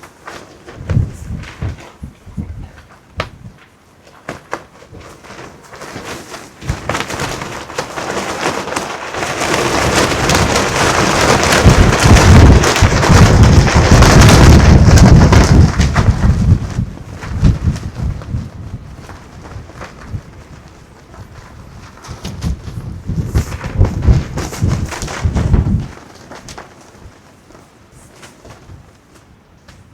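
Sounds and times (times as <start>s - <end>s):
wind buffeting microphone: 0.7s - 3.6s, 8.4s - 27.2s.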